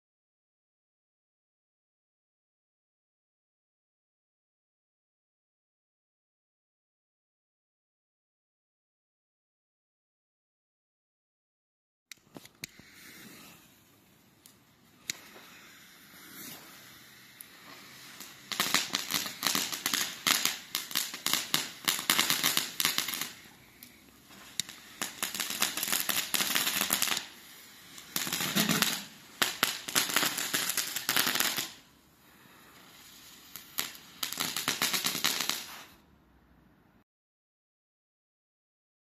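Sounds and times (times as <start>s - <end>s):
firework crackling: 12.2s - 36.1s.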